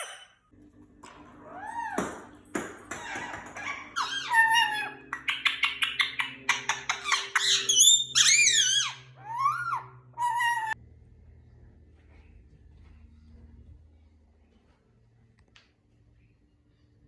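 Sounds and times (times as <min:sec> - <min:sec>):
parakeet chattering and squawking: 0:01.4 - 0:10.8.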